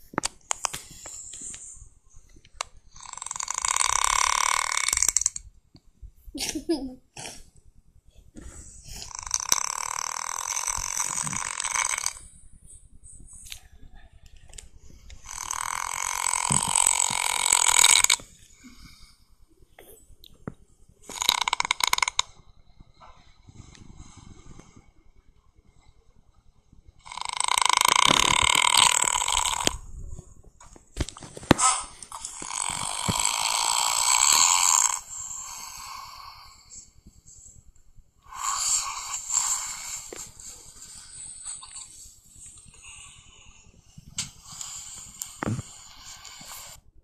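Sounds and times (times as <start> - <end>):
man snoring: 3.0 - 5.4, 9.0 - 12.3, 15.2 - 18.2, 21.1 - 22.3, 27.0 - 29.8, 32.1 - 37.0, 38.2 - 41.8, 42.7 - 46.8.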